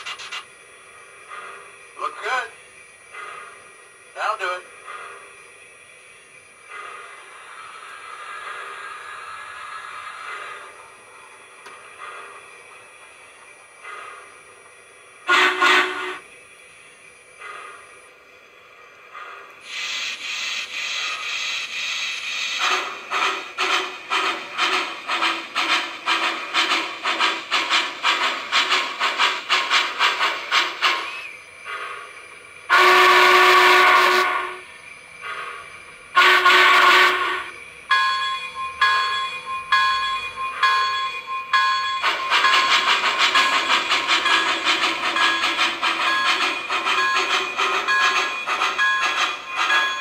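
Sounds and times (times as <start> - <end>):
steam locomotive exhaust chuffs: 0.0 - 50.0
train whistle blasts: 15.3 - 16.2, 32.7 - 34.7, 36.2 - 37.5.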